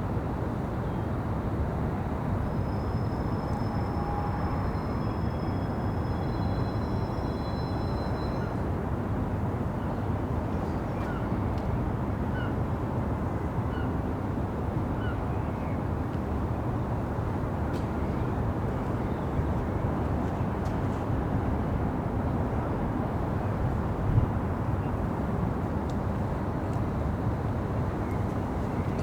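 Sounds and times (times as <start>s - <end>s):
city traffic hum: 15.9s - 29.0s.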